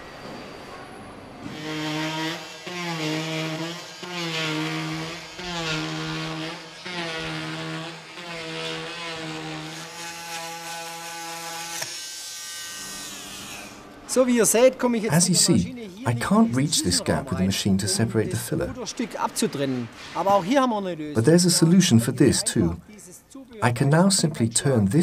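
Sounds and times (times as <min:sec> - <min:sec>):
oscillating multitool sawing wood: 0:01.5 - 0:13.9.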